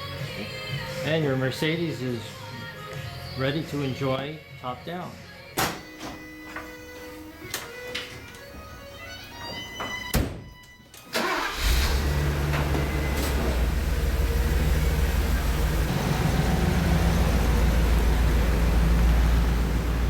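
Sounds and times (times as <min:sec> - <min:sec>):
car engine starting and idling: 0:11.1 - 0:20.0.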